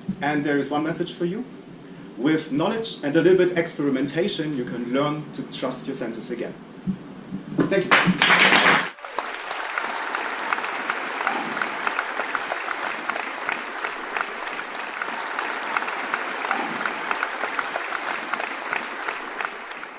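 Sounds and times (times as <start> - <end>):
audience applauding: 7.9 - 19.9.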